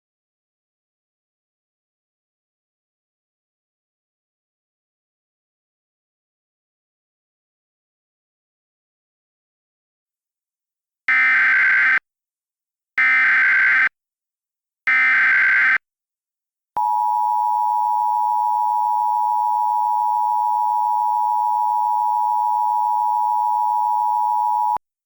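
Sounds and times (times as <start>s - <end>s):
two-tone attention signal: 16.8s - 24.8s.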